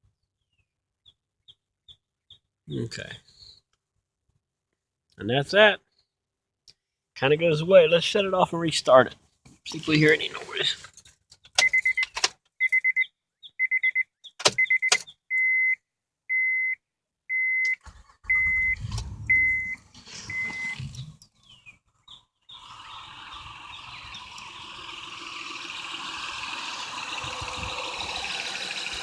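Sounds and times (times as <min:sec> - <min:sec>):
dashboard warning chime beeping: 0:11.6 - 0:21.1
car engine cranking and starting: 0:17.7 - 0:21.6, 0:22.5 - 0:29.0.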